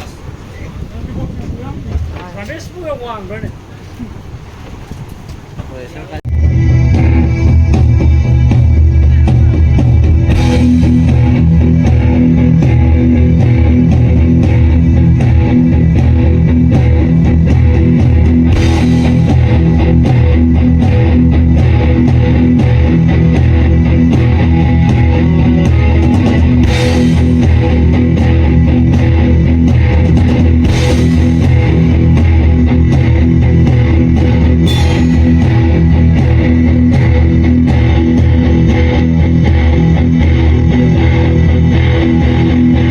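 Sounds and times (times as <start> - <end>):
rock band playing loudly: 6.3 - 42.9
crash cymbal accents: 34.6 - 36.2.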